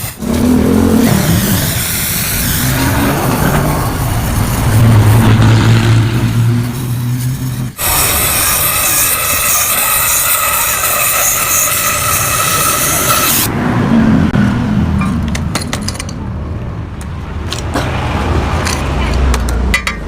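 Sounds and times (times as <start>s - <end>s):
low rumble: 0.2s - 8.0s.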